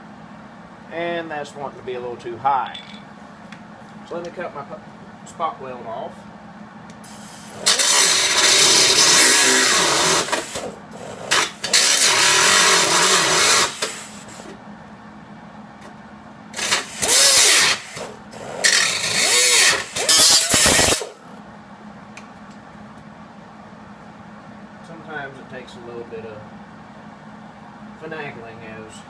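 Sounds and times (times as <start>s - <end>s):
power cutting tool cutting metal: 7.3s - 14.2s, 16.6s - 21.2s.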